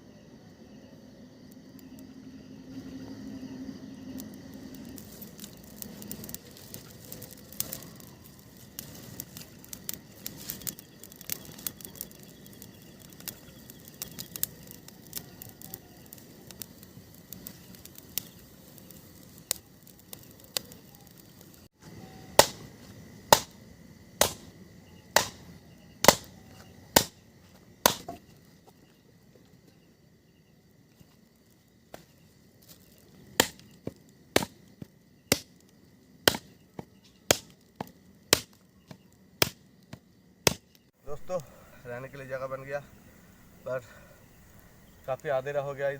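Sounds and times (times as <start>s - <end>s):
campfire crackling: 0.0s - 45.9s
wood chopping strikes: 22.4s - 22.6s, 24.2s - 24.4s, 25.2s - 25.4s, 26.0s - 26.3s, 27.8s - 28.2s, 36.3s - 40.7s.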